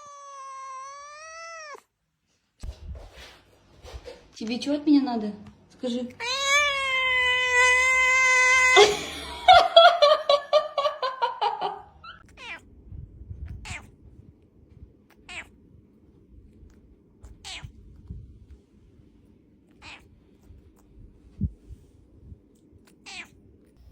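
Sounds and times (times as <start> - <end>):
cat meowing: 0.0 - 1.9, 6.2 - 9.0, 12.1 - 12.7, 13.5 - 14.0, 15.1 - 15.6, 17.2 - 17.8, 19.7 - 20.2, 22.9 - 23.4.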